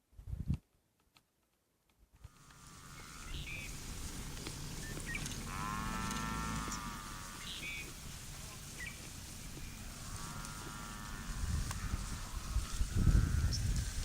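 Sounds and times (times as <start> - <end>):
large animal calling: 2.5 - 8.0.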